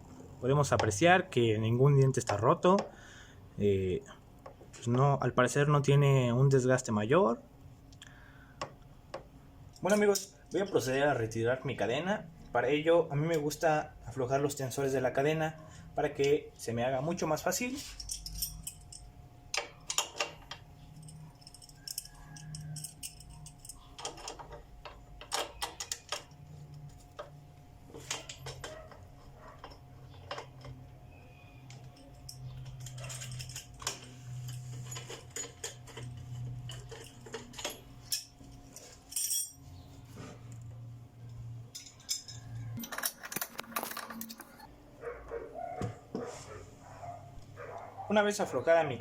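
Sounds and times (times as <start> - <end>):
faint steady hum: 0.0 - 49.0
tools clinking on metal: 9.7 - 10.9, 17.8 - 26.4, 31.6 - 39.6, 41.7 - 44.5.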